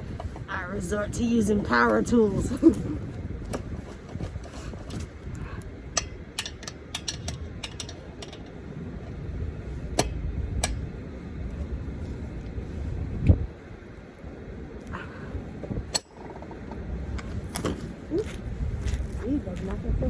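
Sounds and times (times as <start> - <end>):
metallic tool clicks and knocks: 6.0 - 8.6.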